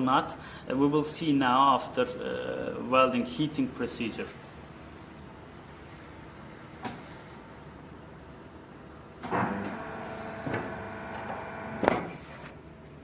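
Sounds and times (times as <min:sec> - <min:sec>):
machine clunks: 0:09.2 - 0:09.8
hydraulic unit whining: 0:09.2 - 0:12.1.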